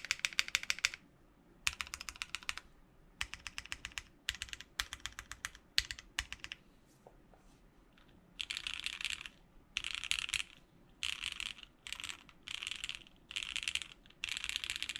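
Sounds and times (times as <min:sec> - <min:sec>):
mechanical keyboard typing: 0:00.0 - 0:01.0, 0:01.7 - 0:02.6, 0:03.2 - 0:06.6, 0:08.4 - 0:14.9.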